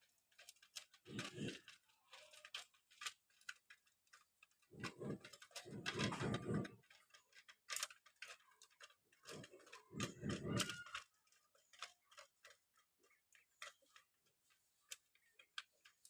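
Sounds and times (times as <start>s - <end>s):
pigeons pecking on hard surface: 0.2s - 16.0s
low rough animal sound: 9.3s - 11.0s.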